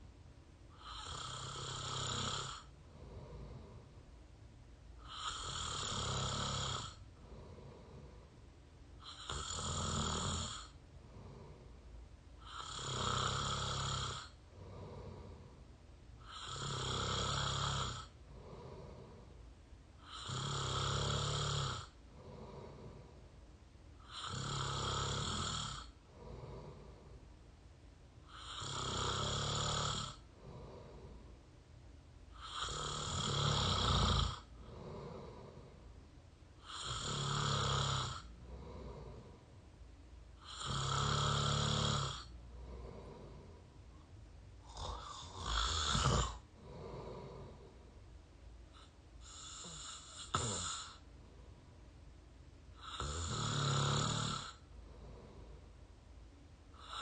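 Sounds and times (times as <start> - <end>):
quiet breathing: 0.0 - 57.0
person snoring loudly: 0.8 - 3.6, 5.0 - 8.0, 9.0 - 11.5, 12.4 - 15.4, 16.2 - 19.2, 20.0 - 23.0, 24.0 - 27.0, 28.3 - 31.1, 32.4 - 35.7, 36.6 - 39.3, 40.4 - 43.4, 44.6 - 47.7, 49.2 - 51.0, 52.8 - 54.6.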